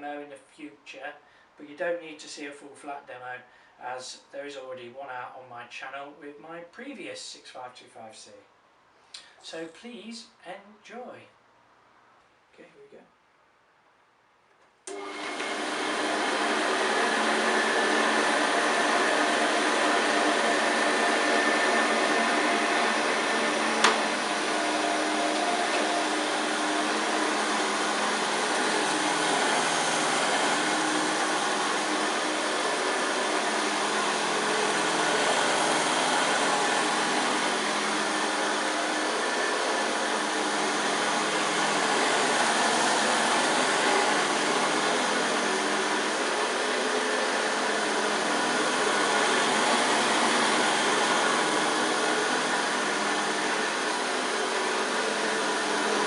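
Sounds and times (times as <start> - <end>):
vacuum cleaner running: 14.9 - 56.0.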